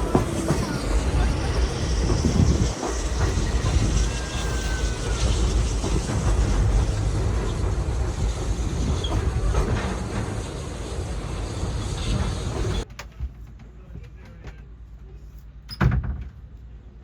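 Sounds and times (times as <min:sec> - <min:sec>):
faint wheel squeal: 0:00.0 - 0:07.7
train wheels rumbling on rails: 0:00.0 - 0:14.8.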